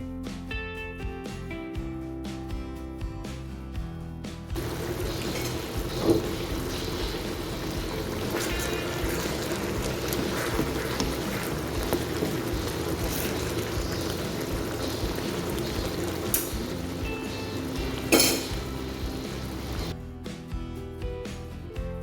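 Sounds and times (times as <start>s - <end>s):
background music: 0.0s - 22.0s
food sizzling in a pan: 4.6s - 19.9s
utensil clinks: 18.1s - 18.7s.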